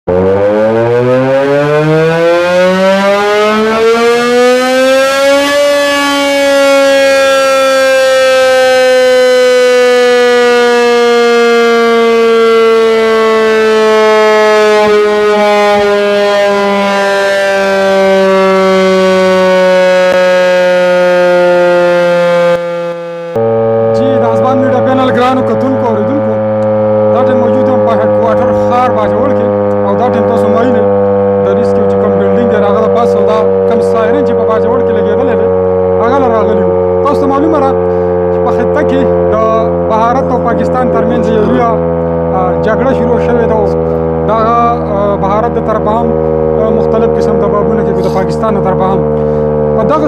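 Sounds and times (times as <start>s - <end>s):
electric warning siren: 0.0s - 50.0s.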